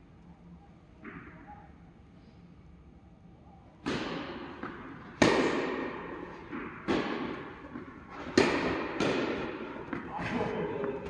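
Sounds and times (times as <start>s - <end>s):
racket striking tennis ball: 3.8s - 10.4s.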